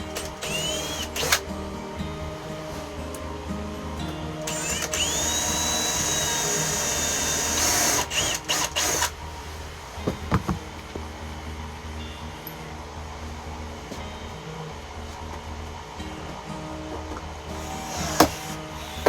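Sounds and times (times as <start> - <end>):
power drill whining: 0.0 - 1.5, 4.4 - 9.8, 17.5 - 19.0.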